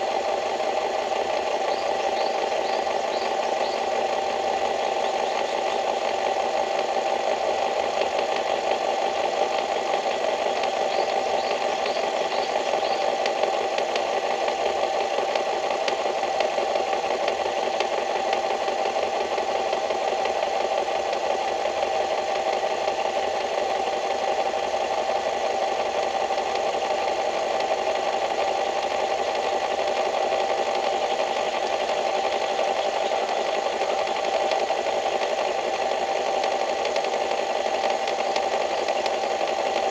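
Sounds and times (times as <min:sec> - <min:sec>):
small engine humming and rattling: 0:00.0 - 0:39.9.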